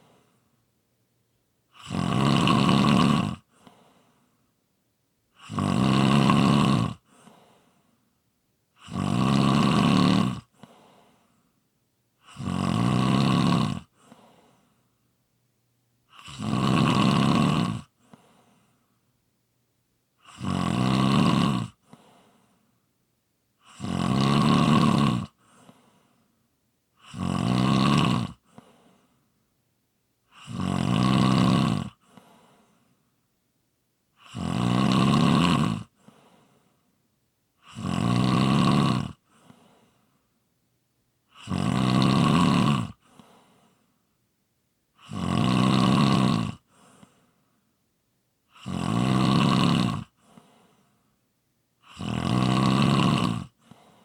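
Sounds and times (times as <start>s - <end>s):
person snoring: 1.7s - 4.2s, 5.4s - 7.7s, 8.8s - 11.2s, 12.2s - 14.6s, 16.1s - 18.7s, 20.2s - 22.5s, 23.6s - 26.0s, 27.0s - 29.1s, 30.3s - 32.8s, 34.2s - 36.7s, 37.6s - 40.0s, 41.3s - 43.8s, 45.0s - 47.2s, 48.5s - 50.8s, 51.8s - 54.0s.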